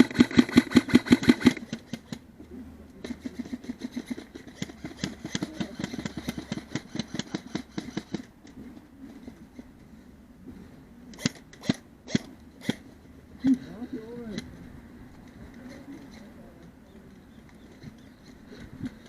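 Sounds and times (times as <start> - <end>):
airsoft rifles firing full auto: 0.0 - 2.2, 3.0 - 8.3.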